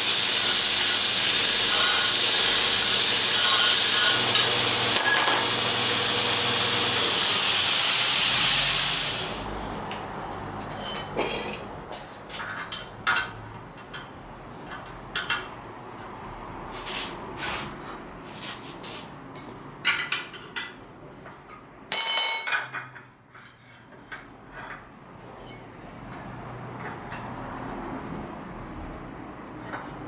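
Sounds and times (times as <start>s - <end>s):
metallic clinks and knocks: 10.6s - 11.7s, 19.3s - 20.8s, 21.9s - 26.2s.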